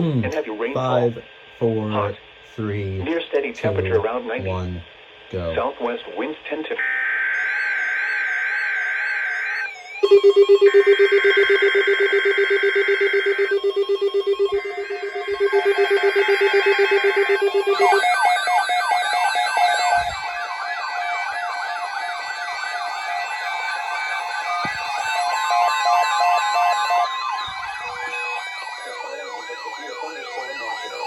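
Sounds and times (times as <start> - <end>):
screechy digital data tones: 6.8 - 31.0
wavering siren sounds: 6.8 - 31.0
pulsing low alarm buzz: 6.9 - 31.0.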